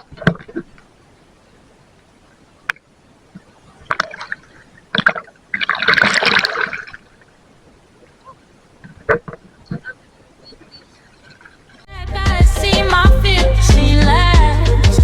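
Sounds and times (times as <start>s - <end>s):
water splashing: 0.0s - 11.9s.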